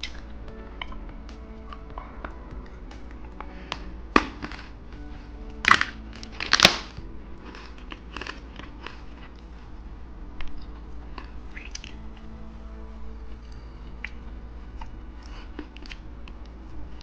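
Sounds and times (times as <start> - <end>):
soft background music: 0.0 - 17.0
crunching hard candy: 5.5 - 9.5.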